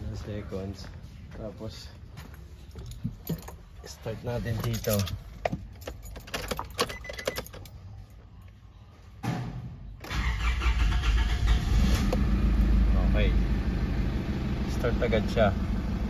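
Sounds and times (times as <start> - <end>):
diesel engine idling: 10.2 - 16.0.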